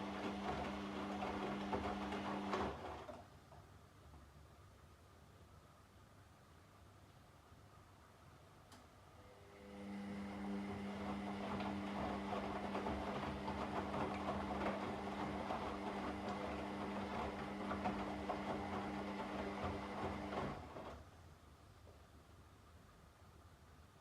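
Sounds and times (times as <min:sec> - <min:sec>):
washing machine motor hum: 0:00.0 - 0:03.2, 0:09.2 - 0:21.1
washing machine clatter: 0:00.0 - 0:03.3, 0:10.4 - 0:21.0.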